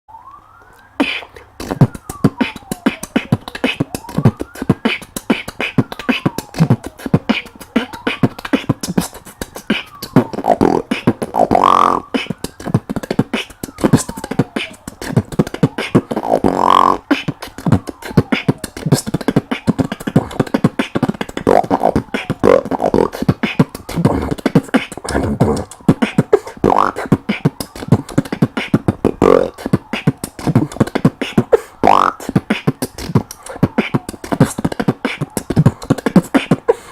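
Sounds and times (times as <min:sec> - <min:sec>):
beatboxing: 0:00.8 - 0:36.9
held vocal tones: 0:00.9 - 0:36.9
pitched vocal sweeps: 0:02.4 - 0:17.3.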